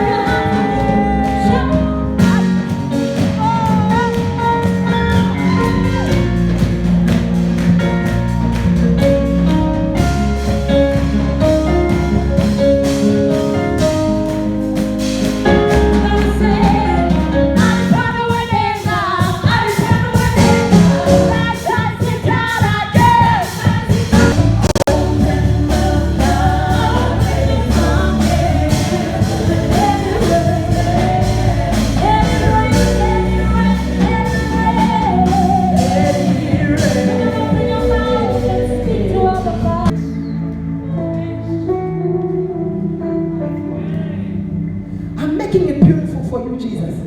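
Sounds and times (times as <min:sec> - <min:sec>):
gospel singing voices: 0:00.0 - 0:08.9, 0:10.4 - 0:41.9
steady bass: 0:00.0 - 0:18.1, 0:20.2 - 0:21.7, 0:24.0 - 0:46.3
held chords: 0:20.0 - 0:22.0, 0:23.4 - 0:46.1.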